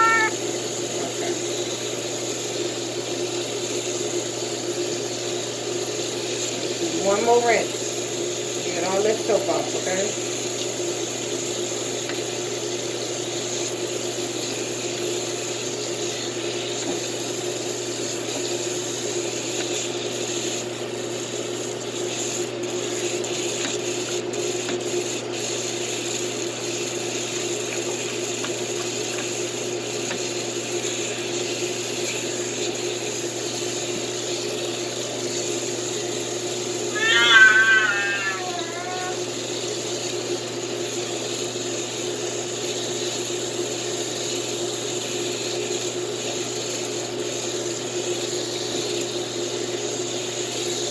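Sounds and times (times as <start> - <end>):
water running from tap: 0.0 - 36.0, 37.0 - 50.9.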